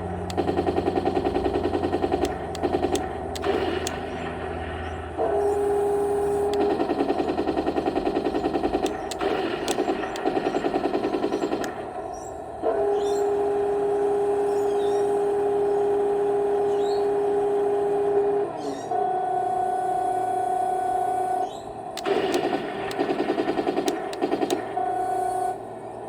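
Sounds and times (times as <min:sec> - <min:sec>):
steady electronic hum: 0:00.0 - 0:26.0
electronic machine-gun rattle: 0:00.2 - 0:12.4, 0:22.0 - 0:25.2.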